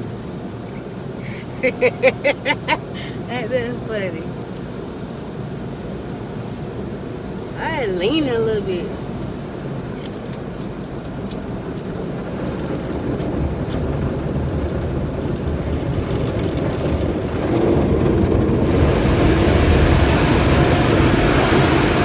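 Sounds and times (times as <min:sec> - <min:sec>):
car wash machinery rumble: 0:00.0 - 0:22.0
water spraying onto car: 0:08.8 - 0:22.0.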